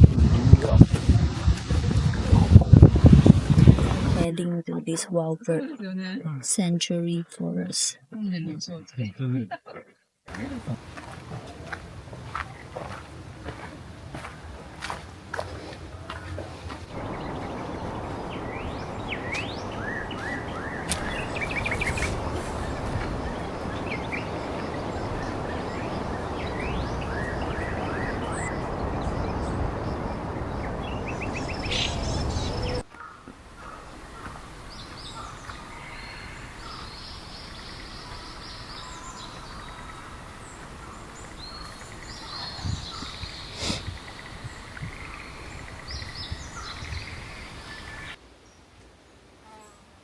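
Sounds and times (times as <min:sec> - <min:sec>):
loud steady rushing noise: 0:16.9 - 0:32.8
birds chirping and singing: 0:16.9 - 0:33.8.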